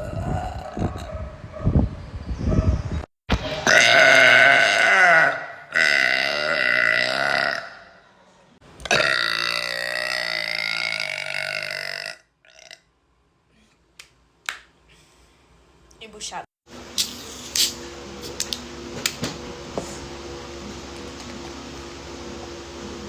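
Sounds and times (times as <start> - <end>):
girl burping: 0.0 - 1.0, 3.7 - 7.9, 8.8 - 12.8.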